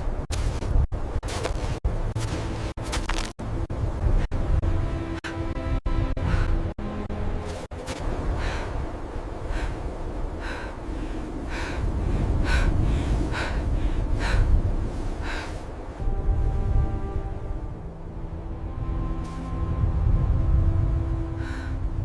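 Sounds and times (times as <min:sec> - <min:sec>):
low wind rumble: 0:00.0 - 0:22.0
heavy laboured breathing: 0:08.1 - 0:15.9.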